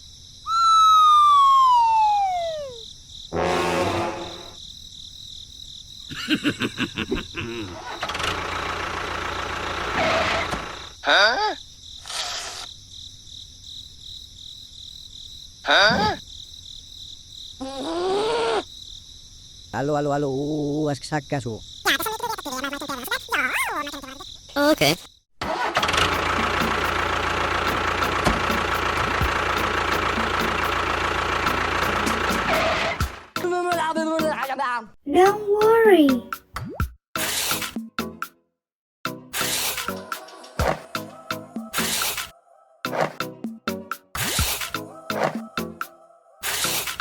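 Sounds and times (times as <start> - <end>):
crickets chirping: 0.0 - 9.7, 10.6 - 25.3
small engine running: 7.8 - 11.0, 25.4 - 33.4
person saying huh: 35.1 - 36.3.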